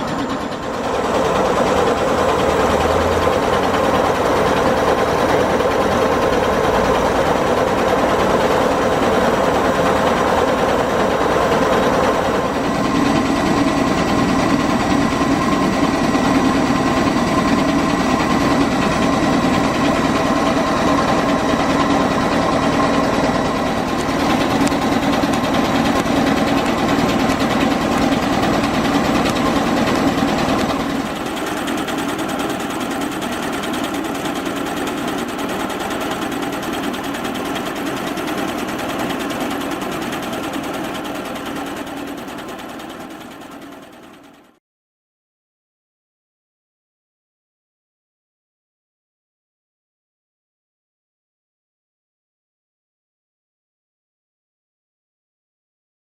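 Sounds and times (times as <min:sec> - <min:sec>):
dynamo whirring and whining: 0:00.0 - 0:44.5.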